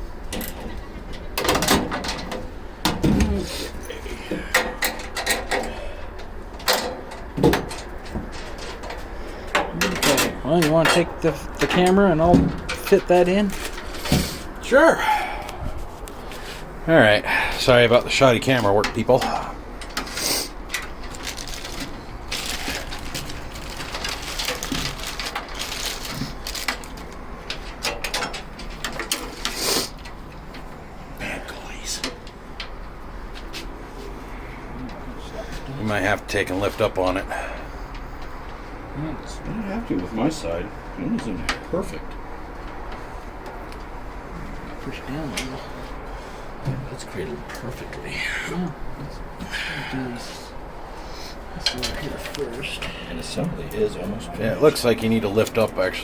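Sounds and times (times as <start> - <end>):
parts clicking and rattling: 0.3 - 14.4, 18.6 - 30.8.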